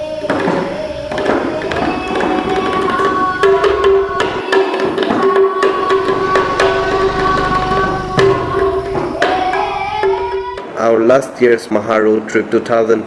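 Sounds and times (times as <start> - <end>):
tabla drum strokes: 0.0 - 11.4
sustained held tone: 5.5 - 10.6.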